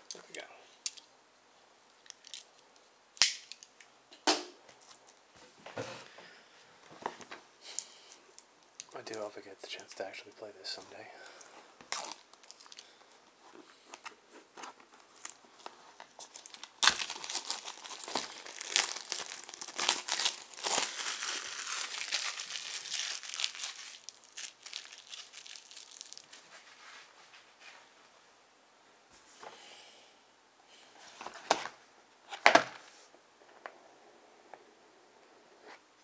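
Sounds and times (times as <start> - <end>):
sharp crack: 3.2 - 4.6
plastic packaging crinkling: 11.2 - 13.0, 13.9 - 26.7.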